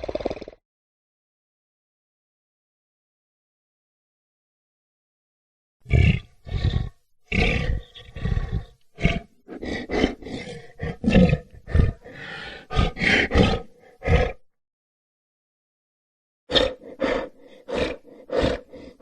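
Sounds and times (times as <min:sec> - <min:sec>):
lion roaring and growling: 0:05.9 - 0:14.4, 0:16.5 - 0:19.0.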